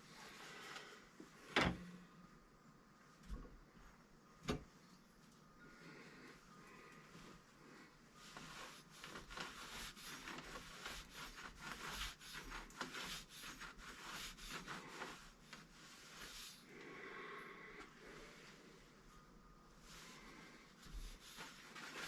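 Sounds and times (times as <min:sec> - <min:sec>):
scrubbing on hard surface: 0:08.2 - 0:16.6, 0:19.9 - 0:22.0.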